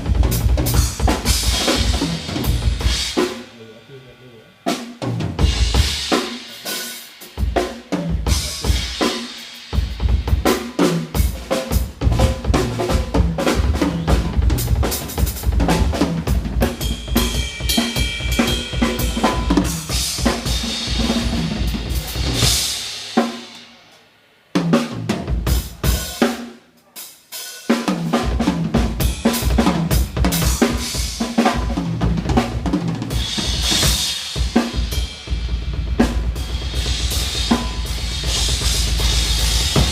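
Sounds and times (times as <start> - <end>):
kick and snare drum patterns: 0.0 - 4.0, 4.7 - 23.8, 24.6 - 26.6, 27.3 - 39.9
cymbal crashes: 16.8 - 21.0.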